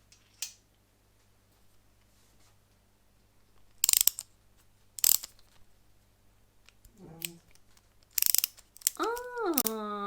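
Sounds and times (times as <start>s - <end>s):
rapid clicking of screwdriver set: 3.8s - 4.3s, 5.0s - 5.5s, 8.0s - 9.0s.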